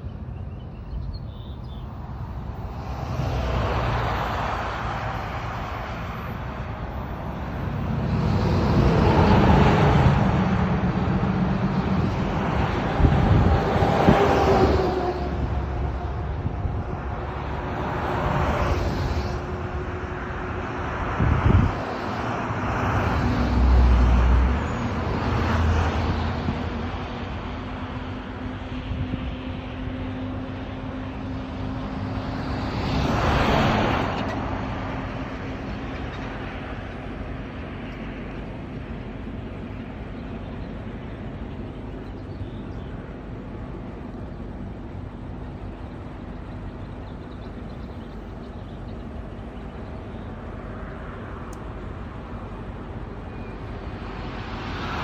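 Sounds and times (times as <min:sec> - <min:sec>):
distant traffic hum: 0:00.0 - 0:55.0
vehicle passing by: 0:02.6 - 0:28.3, 0:30.9 - 0:35.9, 0:50.8 - 0:55.0.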